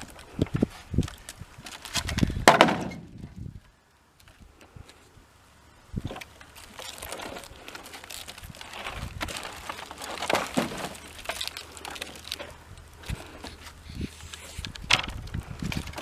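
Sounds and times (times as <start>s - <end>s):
scrap wood clattering: 1.7s - 3.3s, 6.0s - 16.0s.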